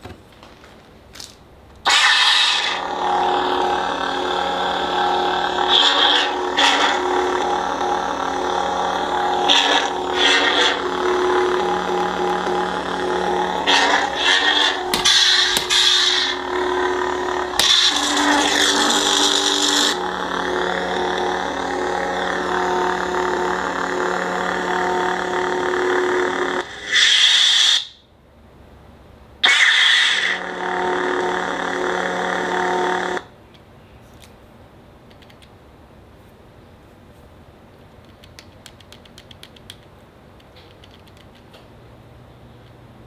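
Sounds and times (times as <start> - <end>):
lightsaber swing bursts: 1.9 - 24.7
lightsaber hum: 1.9 - 26.9, 29.5 - 33.3.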